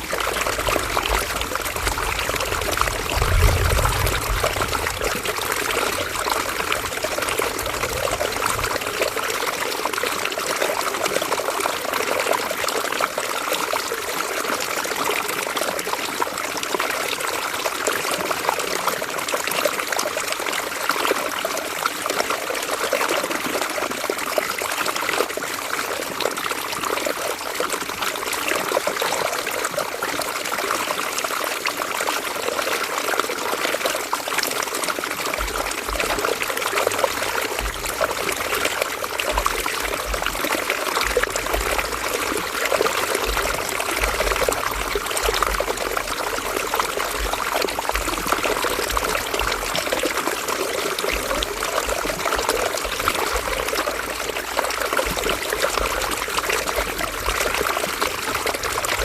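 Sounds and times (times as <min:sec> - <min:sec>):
low rumble: 0:00.0 - 0:09.2, 0:35.4 - 0:50.1
river water flowing: 0:00.0 - 0:59.0.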